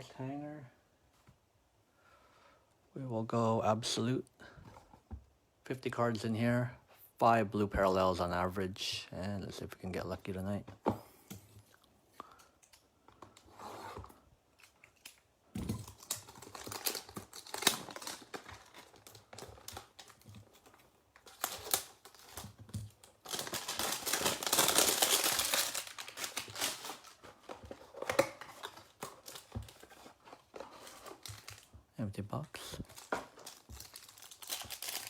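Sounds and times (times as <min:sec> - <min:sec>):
plastic wrapping crinkling: 0:14.6 - 0:31.8, 0:32.4 - 0:35.0.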